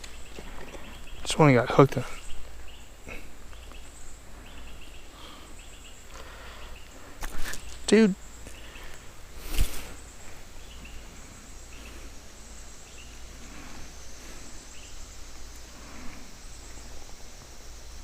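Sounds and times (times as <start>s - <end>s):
faint insect chirping: 0.0s - 18.0s.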